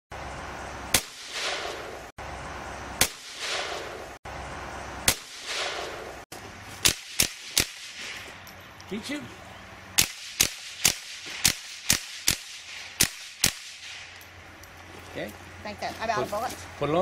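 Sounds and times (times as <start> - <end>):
rifle shots with echo: 0.9 - 2.0, 3.0 - 4.0, 5.1 - 6.1, 10.0 - 14.1.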